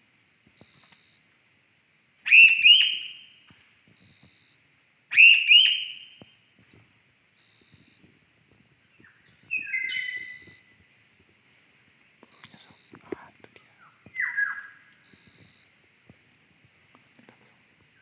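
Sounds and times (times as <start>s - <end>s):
bird whistled calls: 2.3s - 3.3s, 5.1s - 6.2s, 9.5s - 10.6s, 14.1s - 14.8s.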